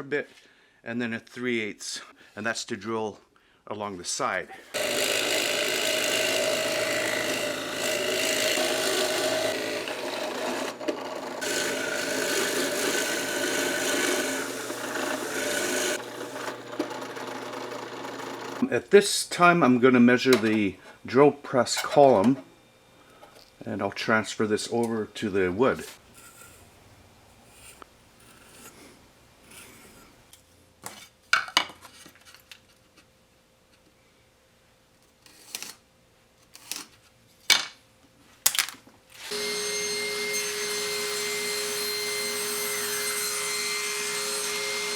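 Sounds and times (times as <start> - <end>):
drill bit rasping into wood: 4.8 - 18.6, 39.2 - 44.9
drill press motor hum: 4.8 - 18.6
soft scraping strokes: 27.4 - 30.2.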